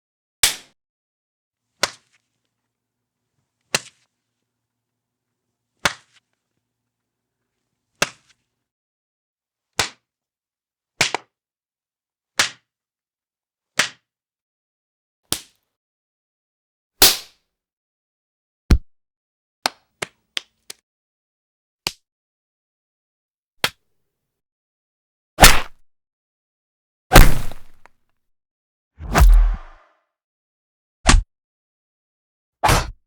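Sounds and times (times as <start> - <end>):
sharp hand slaps: 25.4 - 25.8, 27.1 - 27.9, 29.0 - 29.8.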